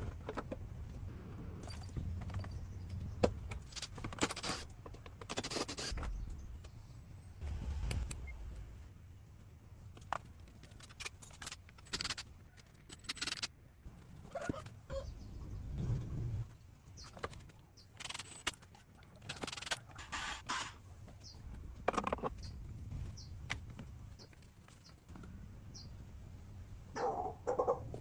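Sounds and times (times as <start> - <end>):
metal tools clinking and scraping: 10.5 - 13.5.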